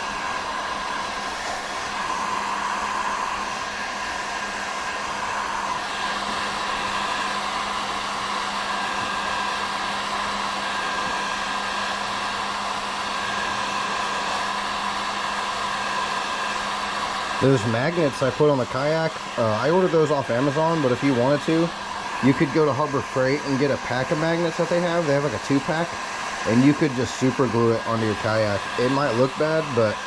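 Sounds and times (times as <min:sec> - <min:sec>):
heat gun blowing: 0:00.0 - 0:30.0.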